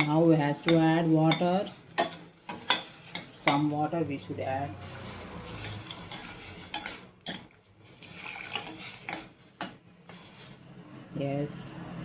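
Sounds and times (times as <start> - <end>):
vessel clinking against pan: 0.0 - 3.7
water pouring into a pan: 4.9 - 6.7, 7.8 - 9.2.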